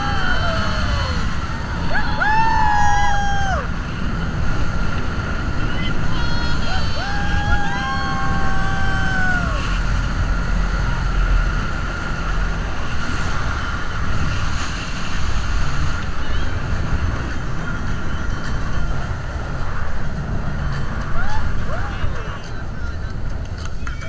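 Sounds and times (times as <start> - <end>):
person shouting: 0.0 - 3.7, 6.2 - 9.6
water rushing against hull: 0.0 - 22.2
speedboat engine: 0.0 - 24.0
wind buffeting microphone: 0.0 - 24.0.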